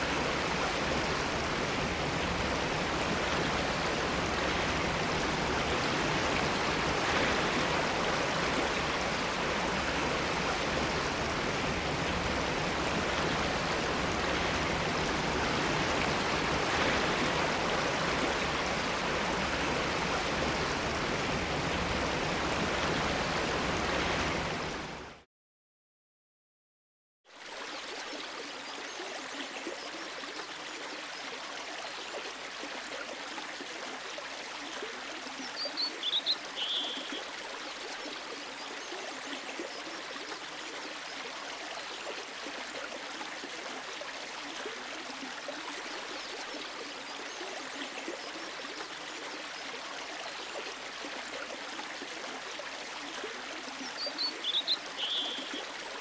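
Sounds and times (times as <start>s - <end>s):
loud rush of water: 0.0s - 25.2s, 27.4s - 56.0s
quiet flowing stream: 0.0s - 25.2s, 27.3s - 56.0s
bird chirp: 35.6s - 37.2s, 54.0s - 55.6s.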